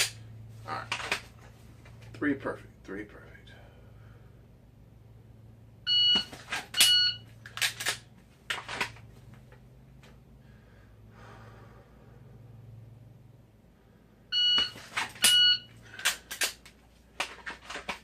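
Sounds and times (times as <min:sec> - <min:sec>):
steady low hum: 0:00.0 - 0:17.2
shot timer beeping: 0:05.9 - 0:07.2.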